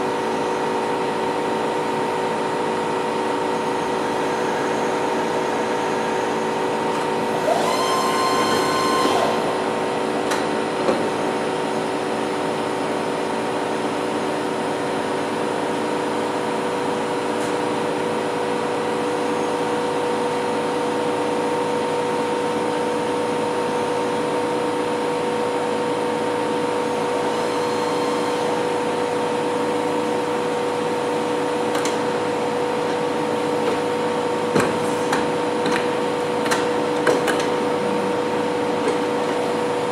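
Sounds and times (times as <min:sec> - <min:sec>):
high machine whine: 0:00.0 - 0:13.6, 0:23.0 - 0:34.5, 0:35.3 - 0:39.9
milling machine hum and whine: 0:00.0 - 0:39.9.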